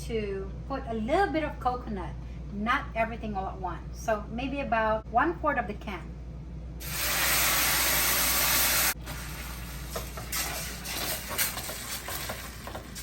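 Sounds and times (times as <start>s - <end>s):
liquid sizzling in hot pan: 6.8s - 13.0s
stirring clicks and scrapes: 9.9s - 13.0s.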